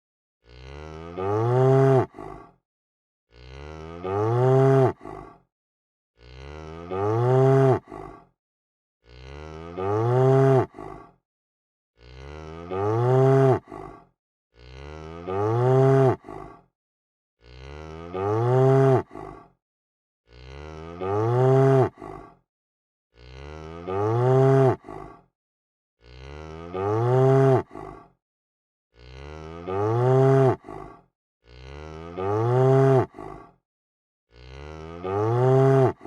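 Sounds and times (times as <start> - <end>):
cow mooing: 0.4 - 2.1, 3.3 - 5.0, 6.2 - 8.0, 9.1 - 10.7, 12.0 - 13.8, 14.6 - 16.3, 17.4 - 19.1, 20.3 - 22.0, 23.2 - 24.9, 26.0 - 27.8, 29.0 - 30.8, 31.5 - 33.2, 34.3 - 36.0.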